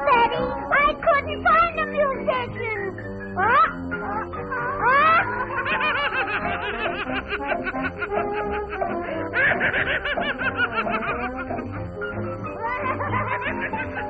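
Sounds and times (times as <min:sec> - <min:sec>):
orchestral cartoon music: 0:00.0 - 0:14.0
high-pitched snickering laughter: 0:03.4 - 0:14.0.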